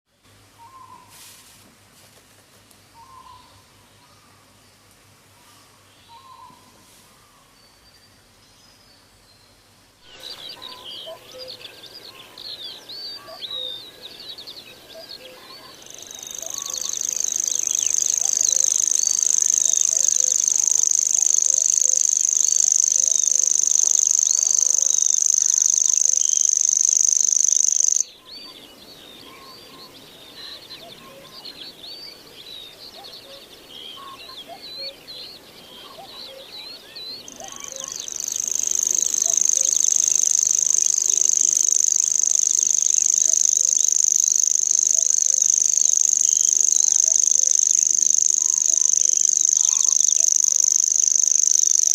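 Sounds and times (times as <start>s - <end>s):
warbler chirping and trilling: 10.0s - 51.9s
high-pitched insect drone: 10.1s - 28.1s, 37.4s - 51.9s.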